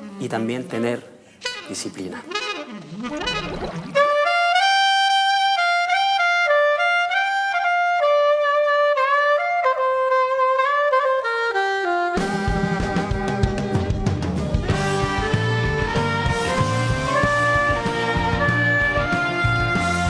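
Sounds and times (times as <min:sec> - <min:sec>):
saxophone melody: 0:00.0 - 0:20.0
band with drums and bass: 0:12.1 - 0:20.0.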